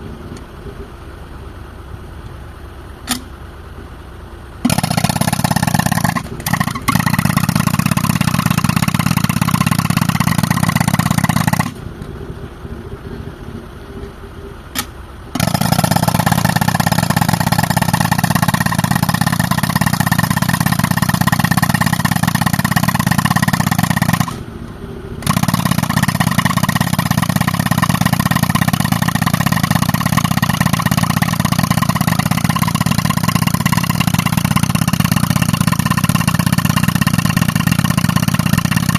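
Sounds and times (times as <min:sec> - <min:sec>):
tractor engine running: 0:00.0 - 0:38.9
pneumatic rock breaker hammering: 0:03.0 - 0:03.3, 0:04.6 - 0:11.8, 0:14.7 - 0:24.4.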